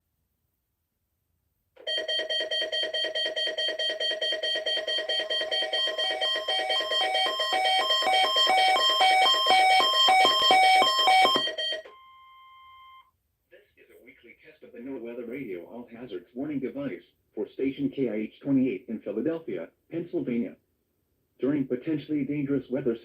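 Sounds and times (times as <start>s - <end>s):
fast-pulsing alarm tone: 1.9s - 11.9s.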